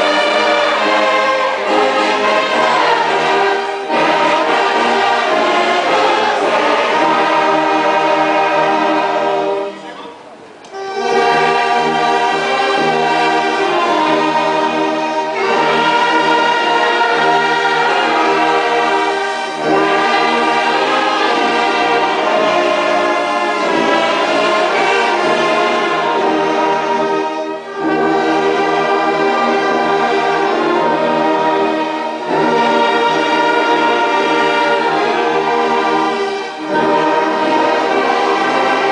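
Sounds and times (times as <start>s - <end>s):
brass and strings playing a hymn: 0.0s - 38.9s.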